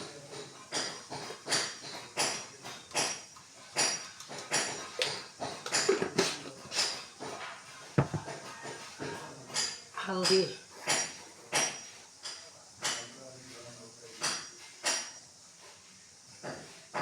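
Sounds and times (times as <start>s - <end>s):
utensil knocking pot: 0.3s - 13.1s.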